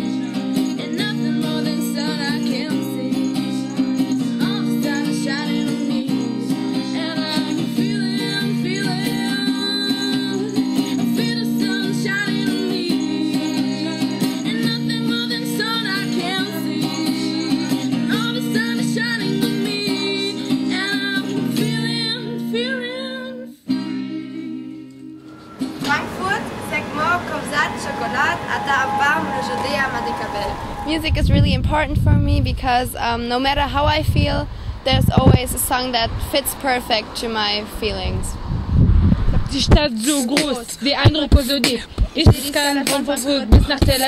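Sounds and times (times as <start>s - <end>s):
person singing: 0.0s - 25.2s, 39.5s - 44.0s
acoustic guitar: 0.0s - 32.2s, 39.4s - 44.0s.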